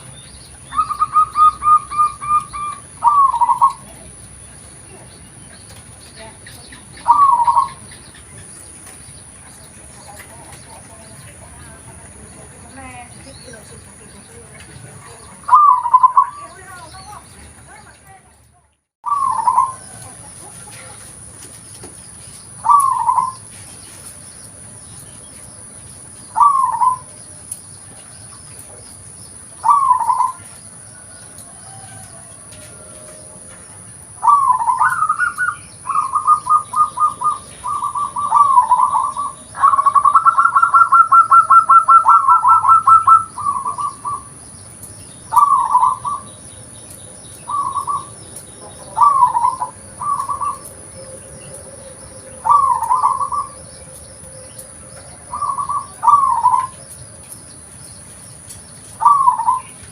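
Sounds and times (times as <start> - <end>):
dove cooing: 0.0 - 4.2, 6.2 - 8.4, 14.4 - 17.2, 19.1 - 21.1, 22.6 - 23.4, 26.3 - 27.2, 29.6 - 33.5, 34.1 - 44.4, 45.3 - 46.4, 47.4 - 56.8, 59.0 - 59.9.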